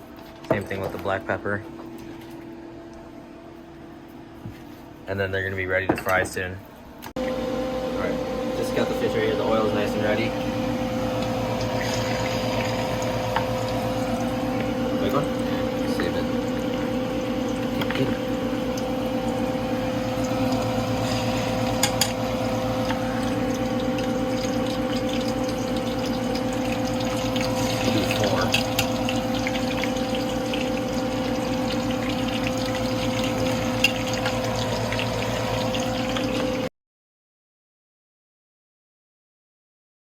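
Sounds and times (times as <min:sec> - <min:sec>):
constant hum: 0:00.0 - 0:36.6
fish frying in hot oil: 0:09.8 - 0:36.7.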